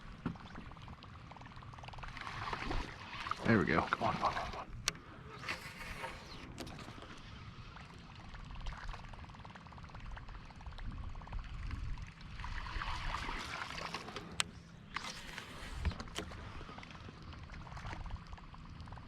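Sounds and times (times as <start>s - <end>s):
water gurgling and splashing: 0.0s - 19.0s.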